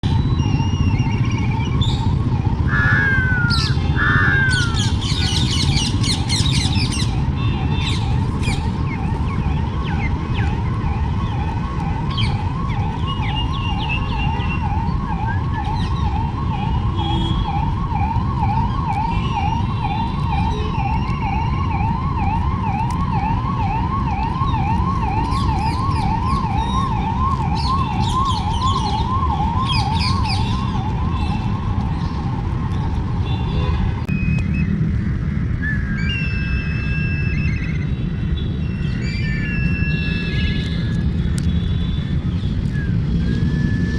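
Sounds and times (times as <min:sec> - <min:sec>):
high bird-like chirps: 0:02.7 - 0:06.5
squirrel chirping: 0:02.7 - 0:06.6.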